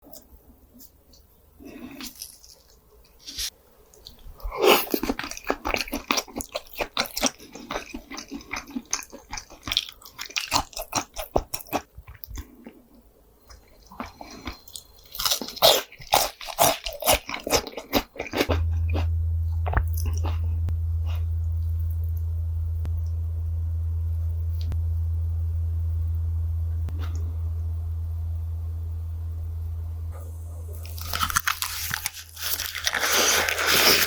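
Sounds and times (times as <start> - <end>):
crunchy chewing: 0.0 - 22.2, 30.1 - 34.0
steady low hum: 18.2 - 34.0.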